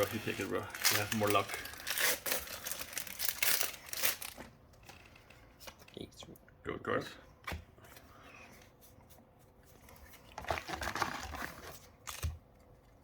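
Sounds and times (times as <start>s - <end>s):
foil wrapper tearing and crinkling: 0.0s - 4.4s.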